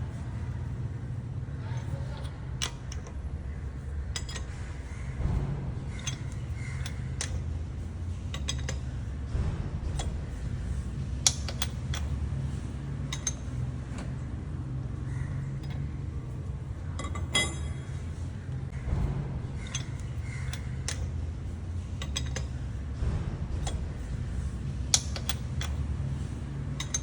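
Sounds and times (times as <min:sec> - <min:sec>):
steady low hum: 0:00.0 - 0:27.0
lug wrench clinking on wheel nuts: 0:03.8 - 0:05.2, 0:05.9 - 0:09.2, 0:09.9 - 0:14.2, 0:15.3 - 0:18.7, 0:19.6 - 0:22.9, 0:23.6 - 0:27.0.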